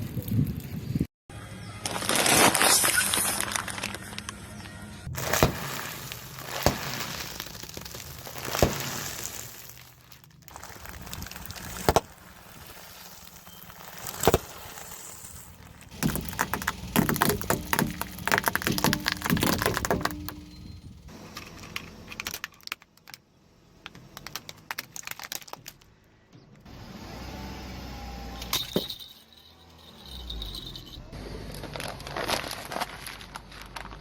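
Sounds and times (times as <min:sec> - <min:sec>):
tyre crushing crunchy objects: 0:05.0 - 0:20.6, 0:31.5 - 0:34.0.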